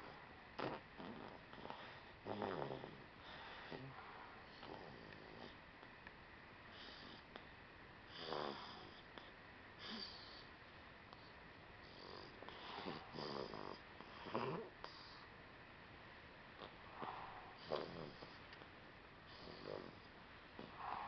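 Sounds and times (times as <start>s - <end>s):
baby snoring softly: 0.0s - 5.6s, 6.7s - 7.5s, 8.1s - 10.5s, 11.1s - 15.3s, 16.6s - 18.4s, 19.3s - 21.0s.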